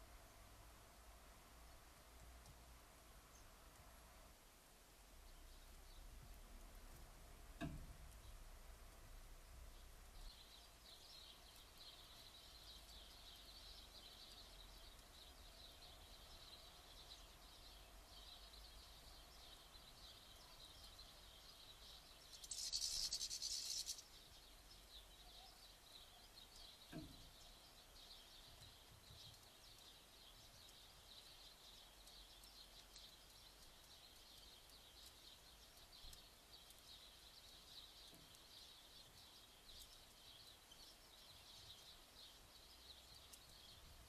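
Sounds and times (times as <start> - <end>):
small birds twittering: 1.7 - 4.0, 5.0 - 44.0
hissing rustle: 21.8 - 24.8.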